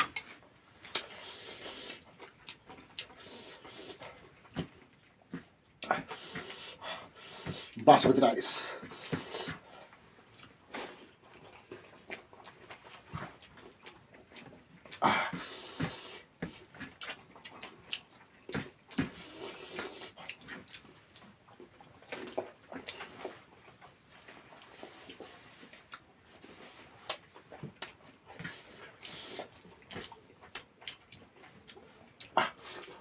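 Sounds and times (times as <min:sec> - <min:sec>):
wet chewing and lip smacking: 0:00.0 - 0:07.8, 0:08.8 - 0:33.0.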